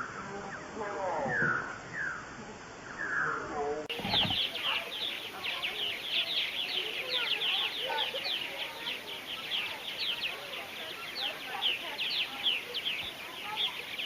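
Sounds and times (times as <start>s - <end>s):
birds chattering with rapid chirps: 0.0s - 14.0s
slowed bird calls gliding down: 0.5s - 14.0s.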